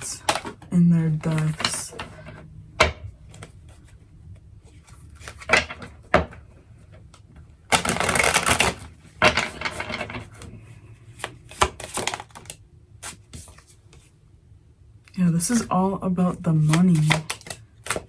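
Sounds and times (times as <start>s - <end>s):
cards shuffling: 0.0s - 2.4s, 7.7s - 14.1s, 16.5s - 18.0s.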